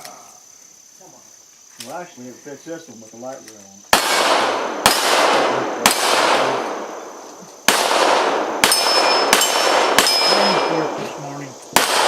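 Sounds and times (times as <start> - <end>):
pistol shots echoing: 3.9 - 11.0, 11.7 - 12.0.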